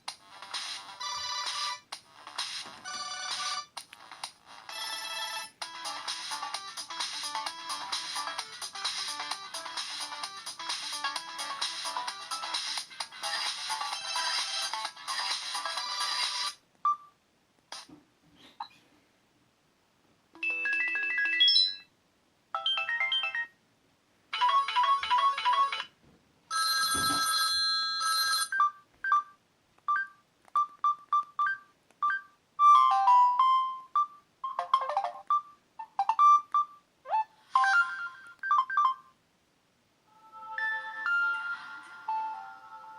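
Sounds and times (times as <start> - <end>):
phone ringtone melodies: 20.4 - 21.9, 22.6 - 23.6, 24.4 - 25.9, 26.5 - 29.3, 30.9 - 36.8, 37.4 - 39.1, 40.2 - 42.9.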